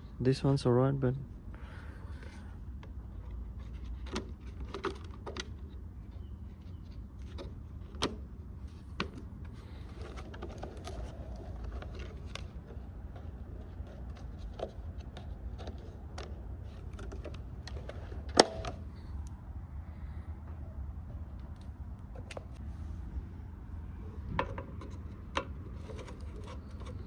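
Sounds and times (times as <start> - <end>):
air filter housing clicks and rattles: 2.7 - 19.4, 24.2 - 27.0
steady low rumble: 5.6 - 27.0.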